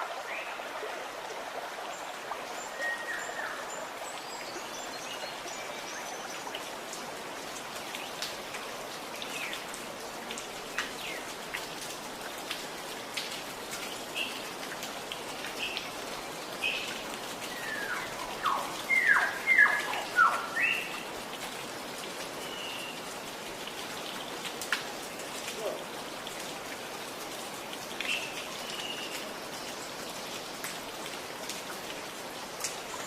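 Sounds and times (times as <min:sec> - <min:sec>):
water drips ticking: 0:02.4 - 0:33.0
birds chirping: 0:15.6 - 0:21.1.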